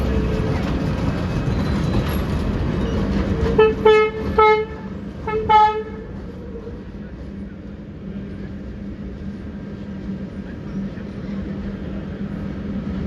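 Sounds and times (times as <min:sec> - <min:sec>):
train rumbling: 0:00.0 - 0:13.0
train horn toots: 0:03.4 - 0:06.1.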